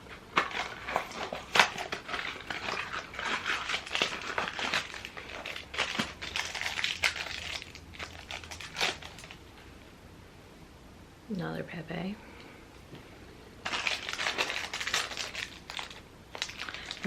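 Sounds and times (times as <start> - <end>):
packaging crinkling and tearing: 0.0 - 9.5, 13.6 - 17.0.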